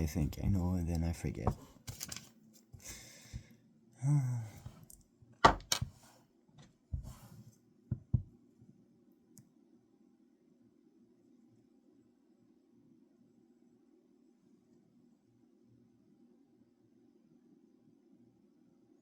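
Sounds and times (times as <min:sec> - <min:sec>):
sigh-like breath: 0:02.8 - 0:04.8
knocks and clicks of handling: 0:04.6 - 0:06.0
faint low hum: 0:06.7 - 0:19.0.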